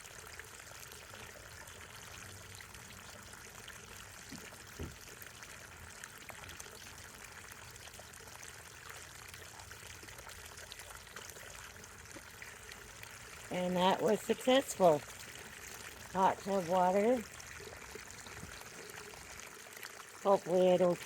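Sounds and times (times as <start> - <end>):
water splashing into fountain: 0.0 - 21.0.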